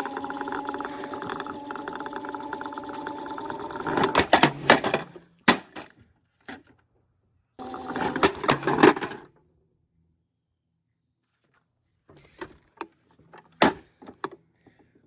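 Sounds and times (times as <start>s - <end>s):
small motor whirring: 0.0s - 4.8s.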